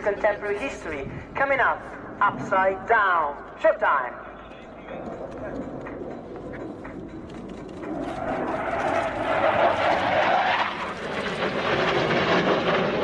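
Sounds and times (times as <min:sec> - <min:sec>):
jet engines roaring: 0:04.2 - 0:13.0.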